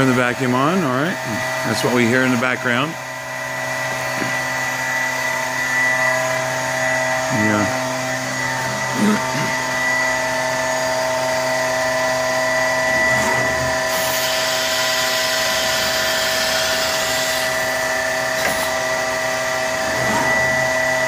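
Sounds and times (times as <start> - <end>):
vacuum pump whining: 0.0 - 21.0
compressed air hiss: 13.9 - 17.6.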